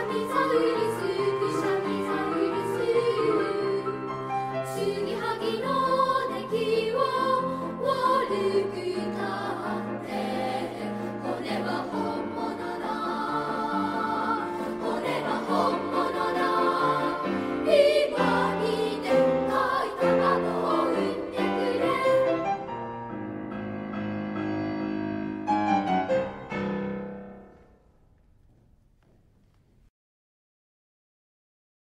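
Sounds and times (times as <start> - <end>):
children's choir singing: 0.0 - 22.9
piano accompaniment: 0.0 - 29.0.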